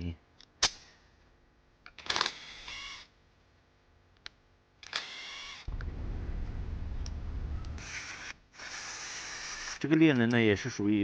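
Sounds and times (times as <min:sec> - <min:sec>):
steady low hum: 0:05.7 - 0:08.6.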